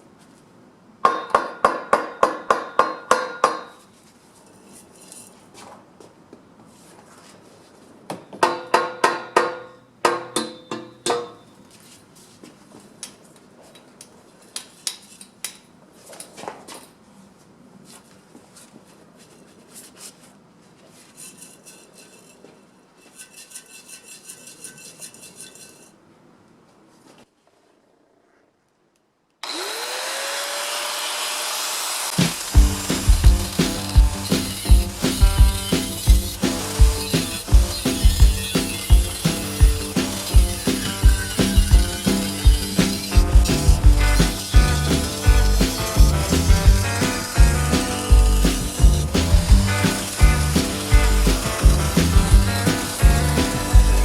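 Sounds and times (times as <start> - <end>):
hammer striking metal: 1.0 - 3.8, 8.4 - 11.5, 32.2 - 54.0.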